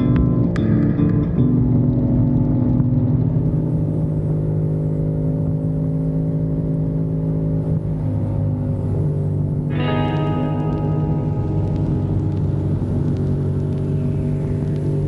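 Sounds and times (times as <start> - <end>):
motorcycle engine cruising: 0.0 - 15.0.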